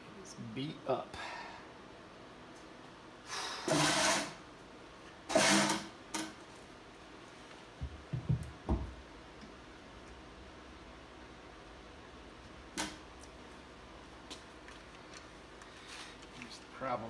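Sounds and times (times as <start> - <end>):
dull knocks: 7.8 - 9.0.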